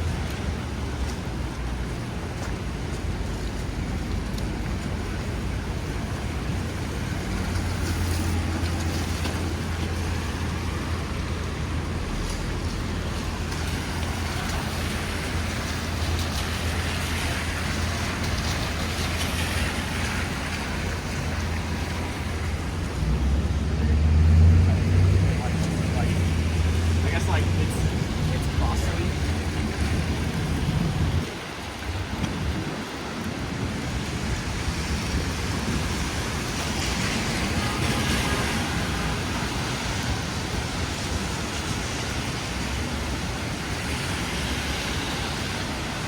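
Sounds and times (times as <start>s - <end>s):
engines rumbling: 0.0s - 46.0s
wet traffic hiss: 11.7s - 32.8s
vehicle passing: 12.0s - 31.4s.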